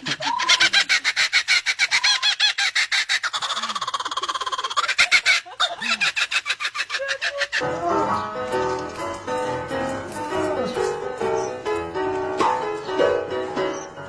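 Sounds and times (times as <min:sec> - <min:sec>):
bird cackling calls: 0:00.0 - 0:08.2.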